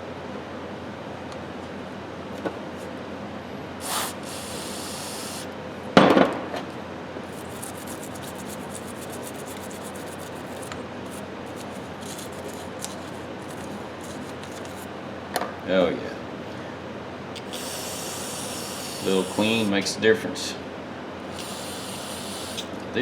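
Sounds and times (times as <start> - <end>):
hiss: 3.8 - 5.5, 17.4 - 19.9, 21.2 - 22.7
scrubbing metal ratchet: 17.4 - 19.8.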